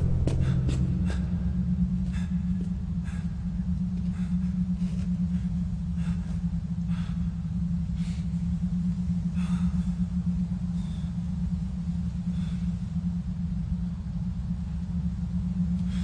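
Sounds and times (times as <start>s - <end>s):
low rumbling drone: 0.0s - 16.0s.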